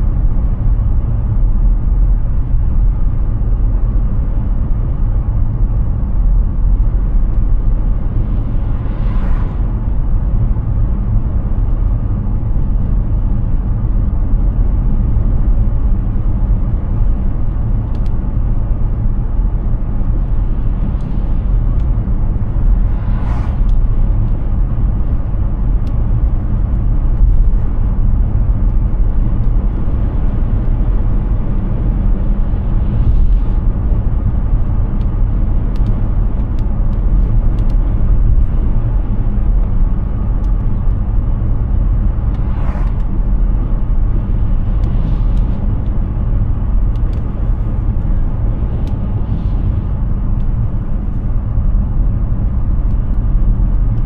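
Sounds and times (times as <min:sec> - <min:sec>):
tyre and road noise: 0:00.0 - 0:54.0.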